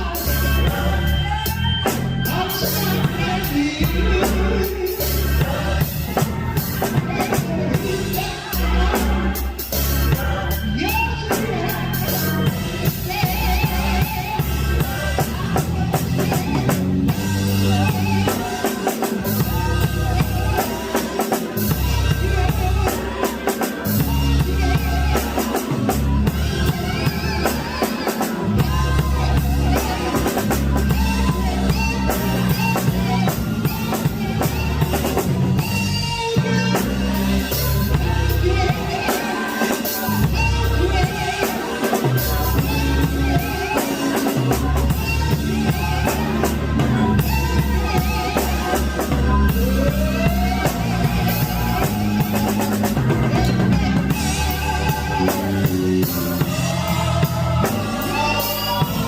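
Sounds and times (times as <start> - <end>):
bass: 0.0 - 59.0
drum kit beat: 0.0 - 59.0
person singing: 0.0 - 59.0.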